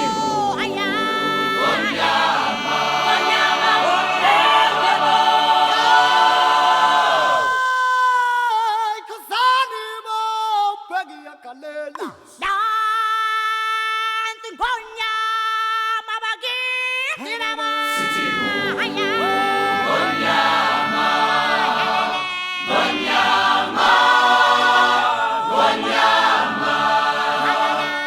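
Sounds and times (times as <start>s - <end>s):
voices holding sustained notes: 0.0s - 7.5s, 17.9s - 28.0s
choir singing unaccompanied: 0.0s - 7.6s, 17.8s - 28.0s.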